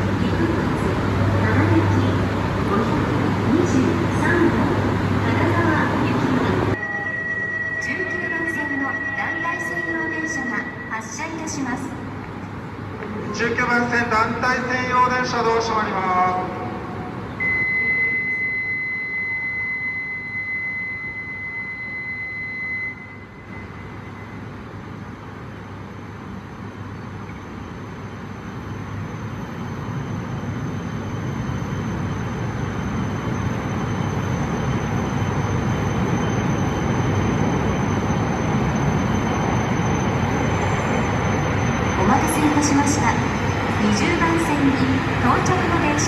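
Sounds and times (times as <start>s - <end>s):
train rumbling: 0.0s - 7.1s, 24.7s - 46.0s
high electronic signal tone: 6.7s - 11.2s.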